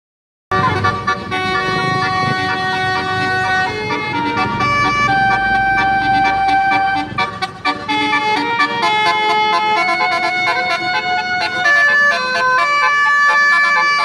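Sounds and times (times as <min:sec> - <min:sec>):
multi-tone air horn melody: 0:00.5 - 0:14.0
low rumble: 0:01.6 - 0:07.4.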